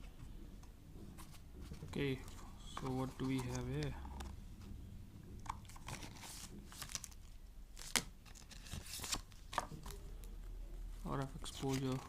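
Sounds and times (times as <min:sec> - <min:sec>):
paper rustling and crinkling: 0:01.2 - 0:03.9, 0:05.4 - 0:10.0, 0:11.0 - 0:12.0.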